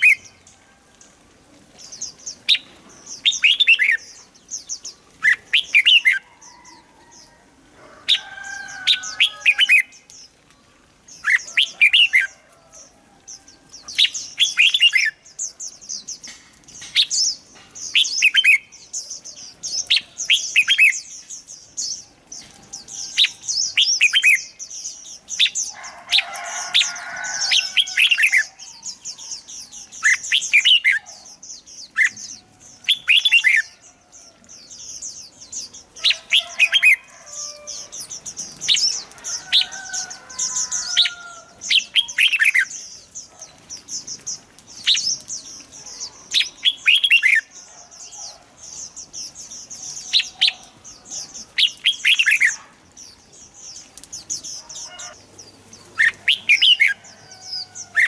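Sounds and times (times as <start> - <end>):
birds singing whistled phrases: 2.0 - 6.2, 26.4 - 33.8, 37.7 - 43.4, 44.1 - 48.4.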